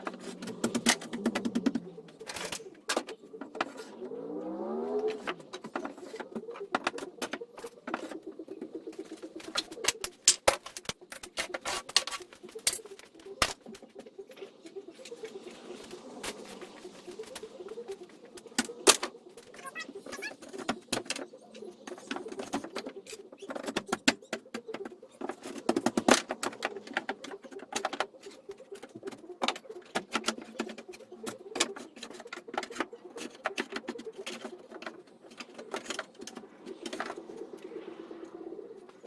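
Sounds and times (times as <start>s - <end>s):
continuous low warbling: 0.0s - 39.0s.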